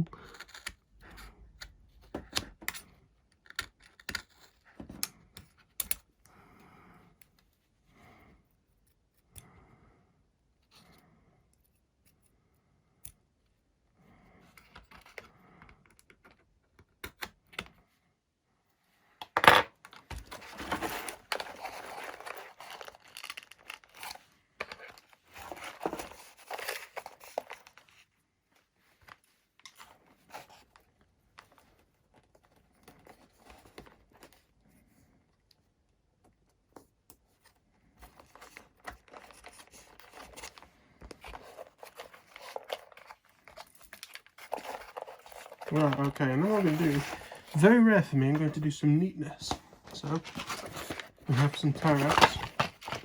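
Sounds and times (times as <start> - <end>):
rustling and tearing noise: 20.2 - 28.1, 38.1 - 53.0.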